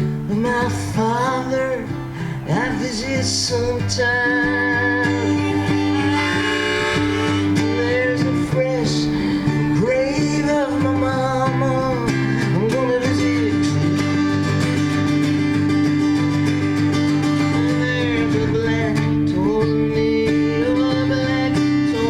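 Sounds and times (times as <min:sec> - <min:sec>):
acoustic guitar: 0:00.0 - 0:22.0
live country folk band: 0:00.0 - 0:22.0
bass line: 0:04.0 - 0:09.8
sliding lead melody: 0:04.3 - 0:08.6.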